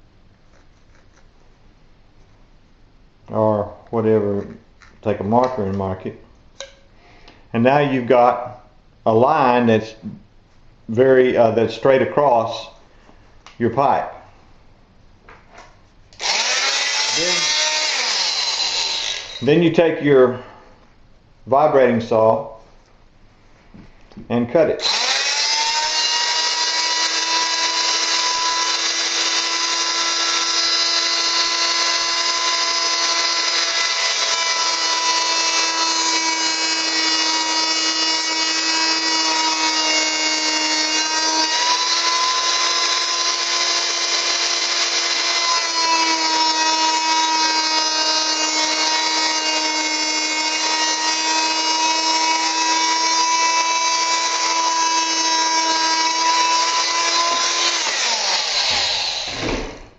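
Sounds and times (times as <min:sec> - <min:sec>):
multi-tool cutting plastic pipe: 0:16.1 - 0:19.6, 0:24.8 - 0:59.8.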